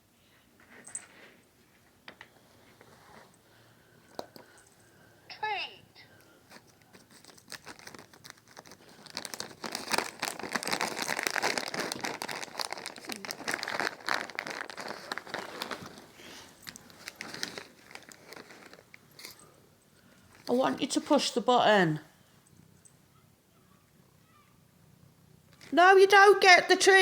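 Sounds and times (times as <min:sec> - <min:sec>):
plastic packet crinkling: 0:06.5 - 0:19.4.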